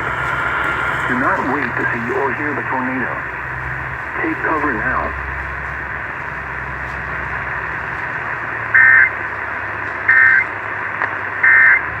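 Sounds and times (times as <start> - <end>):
radio hiss: 0.0 - 12.0
alert data tone bursts: 8.7 - 9.2, 10.1 - 10.5, 11.4 - 11.8.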